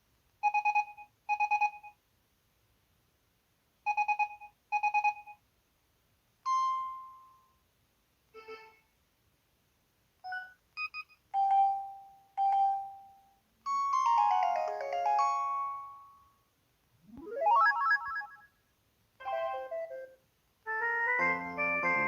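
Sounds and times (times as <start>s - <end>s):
rising run of electronic notes: 17.1s - 18.4s.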